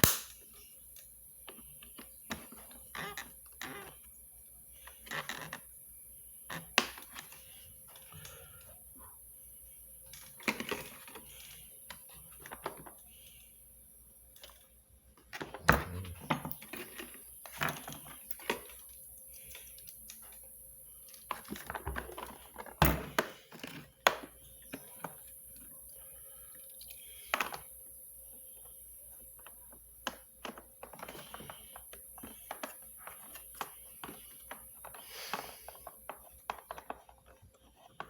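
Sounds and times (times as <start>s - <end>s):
steady hiss: 31.2s - 36.1s.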